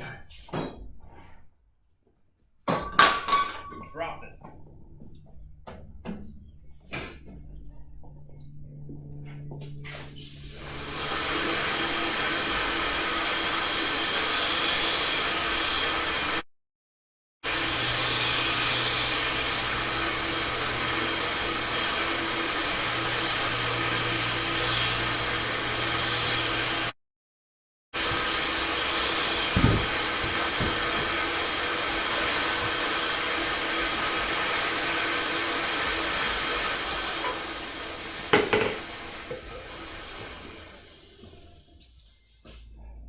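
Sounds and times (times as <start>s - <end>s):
forge rushing noise: 28.0s - 41.0s
knocks: 29.5s - 31.2s.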